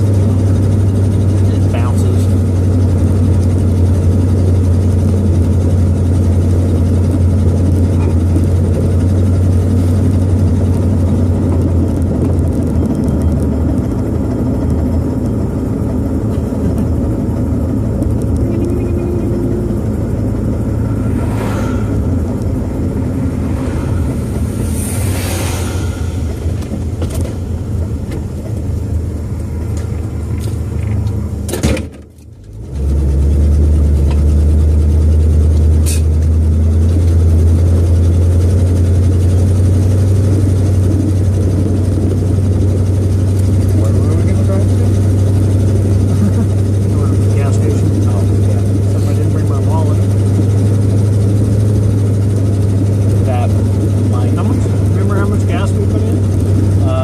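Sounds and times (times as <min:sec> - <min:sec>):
car engine and road drone: 0:00.0 - 0:57.0
brief whooshes: 0:20.7 - 0:27.8.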